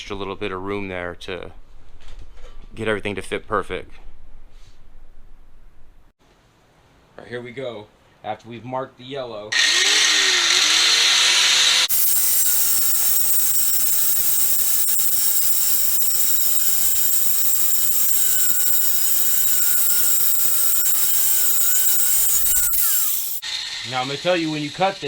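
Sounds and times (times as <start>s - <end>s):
power tool blade cutting metal: 9.6s - 23.5s.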